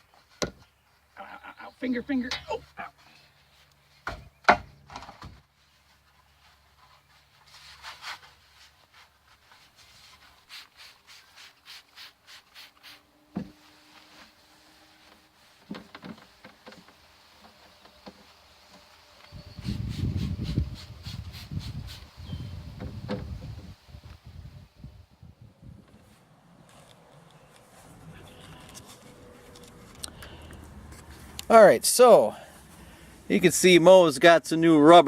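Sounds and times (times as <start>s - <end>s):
rubbing and scraping: 4.9s - 23.5s.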